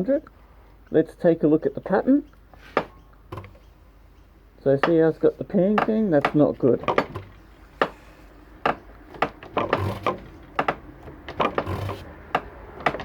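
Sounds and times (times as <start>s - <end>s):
hand-lever pump clicking: 8.7s - 13.0s.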